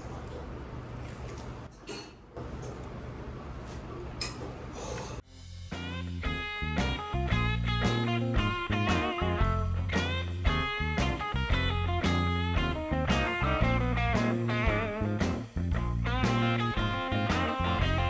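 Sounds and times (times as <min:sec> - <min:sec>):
guitar-led background music: 0:05.7 - 0:18.0.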